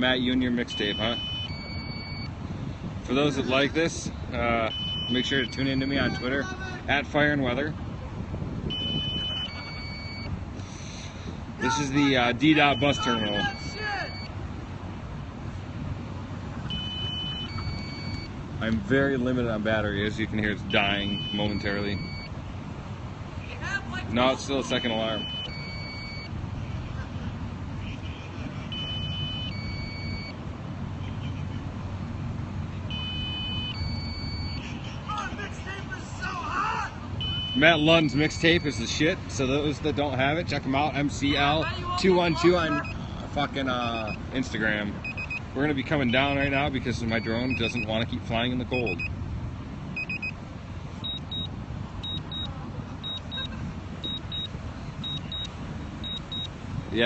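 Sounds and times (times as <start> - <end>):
two-part electronic warning beep: 0.6 - 2.4, 4.6 - 6.4, 8.7 - 10.4, 12.6 - 14.4, 16.7 - 18.3, 20.7 - 22.3, 24.7 - 26.4, 28.7 - 30.4, 32.9 - 34.6, 37.2 - 38.8, 42.2 - 44.3, 45.0 - 48.1, 48.7 - 49.1, 50.0 - 50.4, 51.0 - 56.5.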